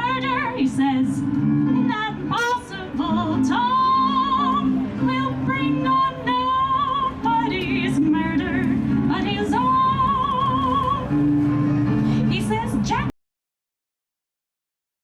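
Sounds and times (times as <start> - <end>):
woman singing with vibrato: 0.0 - 11.2
instrumental accompaniment: 1.3 - 5.3.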